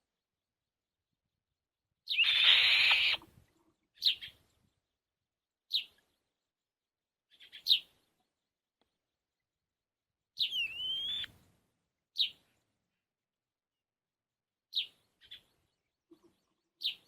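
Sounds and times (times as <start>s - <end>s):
small bird harsh call: 2.1s - 3.3s.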